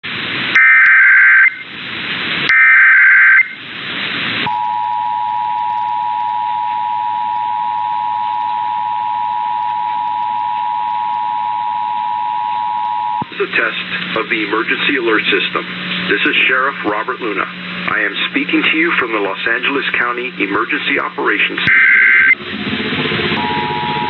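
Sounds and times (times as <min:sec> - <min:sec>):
radio hiss: 0:00.1 - 0:04.6, 0:12.9 - 0:22.4
two-tone attention signal: 0:00.6 - 0:01.6, 0:02.5 - 0:03.6, 0:04.5 - 0:13.4, 0:21.7 - 0:22.4, 0:23.3 - 0:24.0
shrill warbling data bursts: 0:21.6 - 0:22.4.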